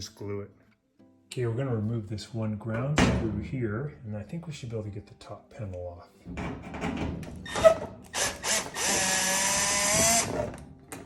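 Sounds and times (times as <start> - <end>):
power drill whining: 7.5 - 10.5.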